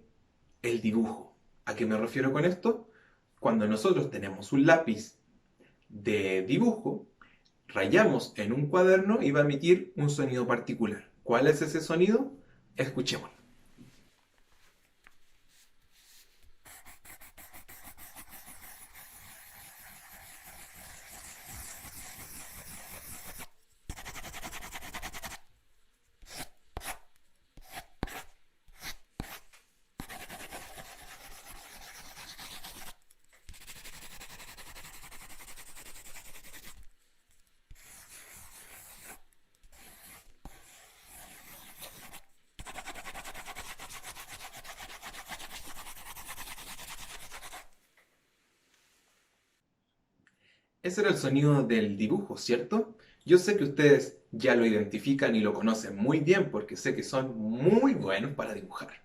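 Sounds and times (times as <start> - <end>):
pencil scribbling on paper: 16.0 - 25.4, 26.2 - 29.4, 30.0 - 47.8.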